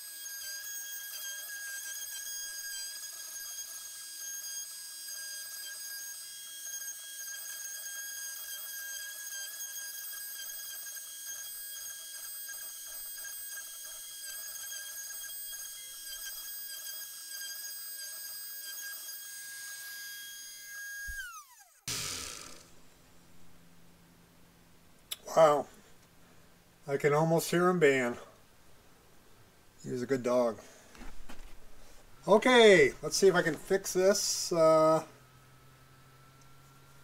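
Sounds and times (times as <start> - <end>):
router spindle whining: 0.0 - 22.8, 32.2 - 37.0.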